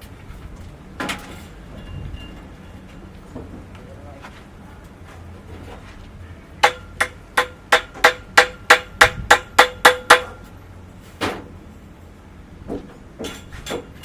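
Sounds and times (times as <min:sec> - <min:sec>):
hammer blows ringing: 0:06.6 - 0:10.5.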